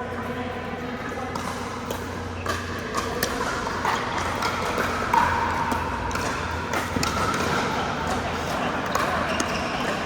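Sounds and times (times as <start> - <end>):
steady low hum: 0.0 - 10.0
paddles hitting plastic ball: 1.4 - 7.7.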